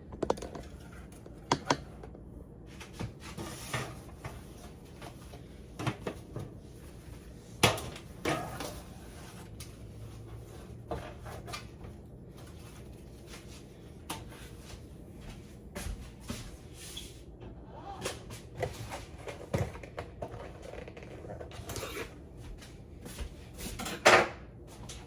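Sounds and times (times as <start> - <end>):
dishes and utensils knocking: 0.0 - 2.1.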